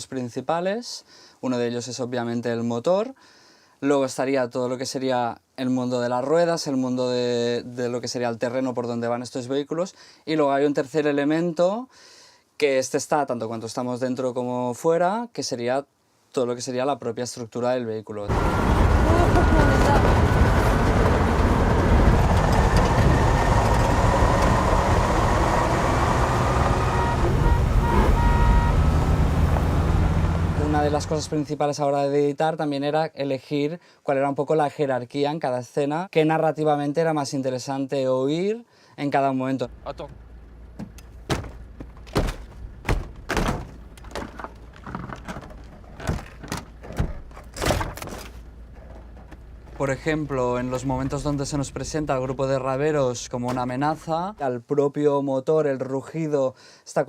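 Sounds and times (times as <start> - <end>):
heavy vehicle engine running: 18.3 - 31.5, 39.7 - 54.3
sharp knocks and thuds: 40.7 - 49.8.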